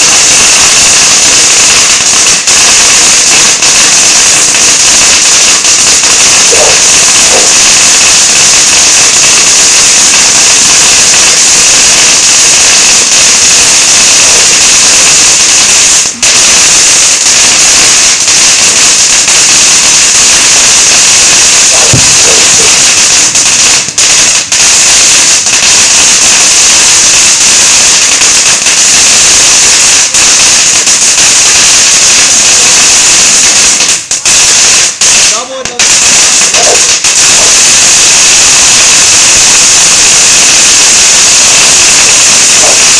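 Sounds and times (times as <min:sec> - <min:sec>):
firecrackers crackling: 0:00.0 - 0:42.9.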